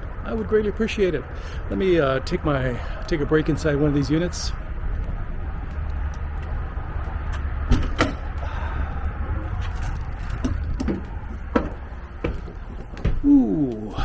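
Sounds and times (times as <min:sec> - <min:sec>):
steady low rumble: 0:00.0 - 0:14.0
door and steps knocking: 0:10.4 - 0:13.3.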